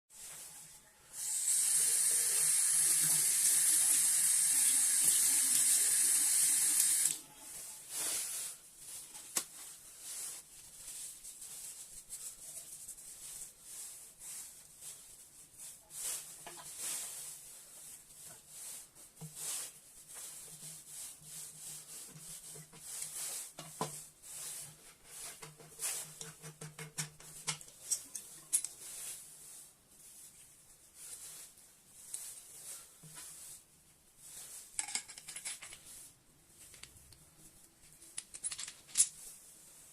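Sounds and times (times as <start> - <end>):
water running from a faucet: 1.2 - 7.2.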